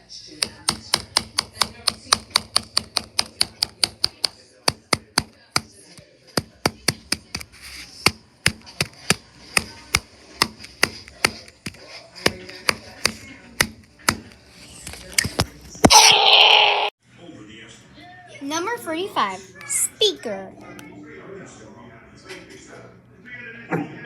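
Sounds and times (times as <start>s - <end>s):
screwdriver tapping a phone: 0.3s - 14.4s.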